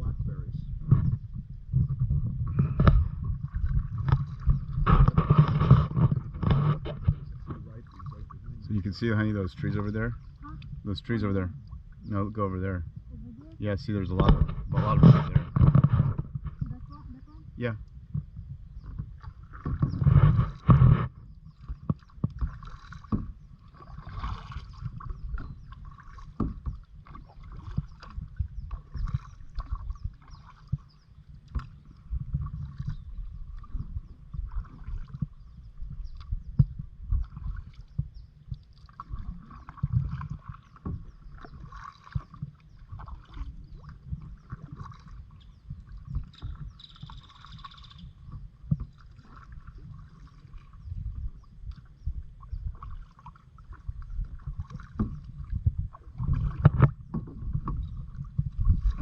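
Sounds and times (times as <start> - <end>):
low rumble: 0.0 - 21.5
paddle strokes splashing water: 0.7 - 59.0
knocks against kayak hull: 14.2 - 16.7, 36.5 - 36.8.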